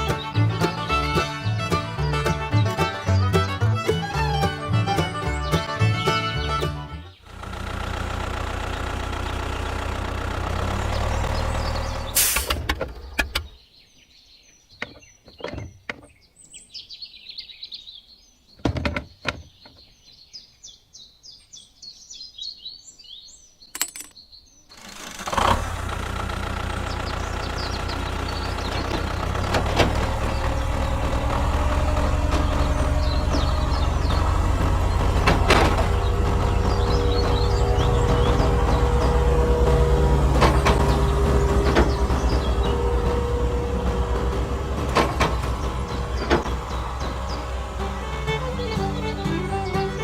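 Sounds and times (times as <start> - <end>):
birds chirping: 0.0 - 7.6, 8.6 - 25.0, 26.4 - 50.0
small tractor motor running: 0.0 - 13.6, 24.8 - 50.0.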